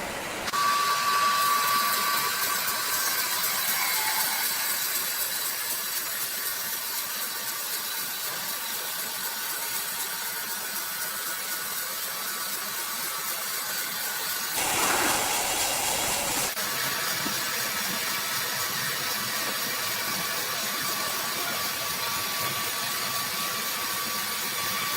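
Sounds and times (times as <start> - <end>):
saw cutting through log: 14.6 - 16.6.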